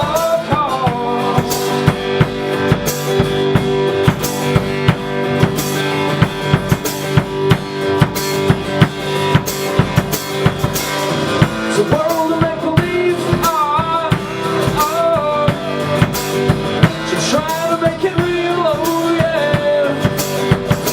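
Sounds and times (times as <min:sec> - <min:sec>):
person singing: 0:00.0 - 0:02.2, 0:11.6 - 0:20.9
drum kit beating: 0:00.0 - 0:20.9
electric guitar chords: 0:00.0 - 0:20.9.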